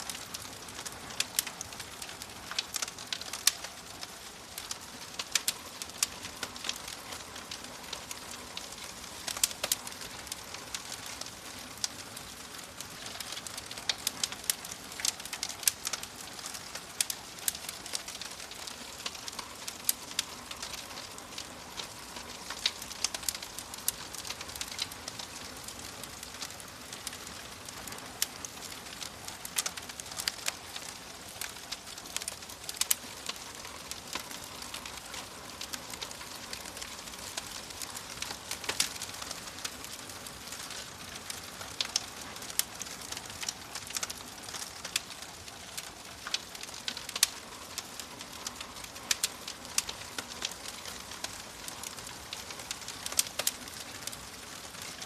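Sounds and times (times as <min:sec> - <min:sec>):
fire crackling: 0:00.0 - 0:55.0.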